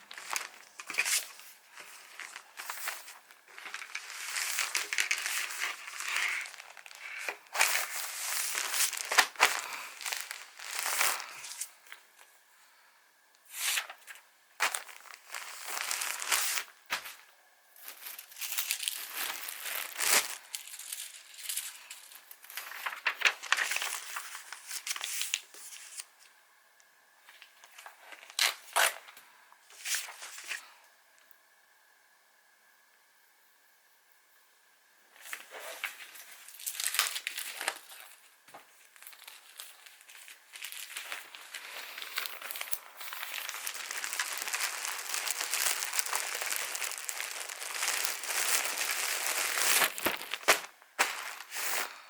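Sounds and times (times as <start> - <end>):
packaging crinkling and tearing: 0.0 - 12.3, 13.6 - 17.2, 17.8 - 26.1, 27.4 - 29.1, 35.2 - 52.0.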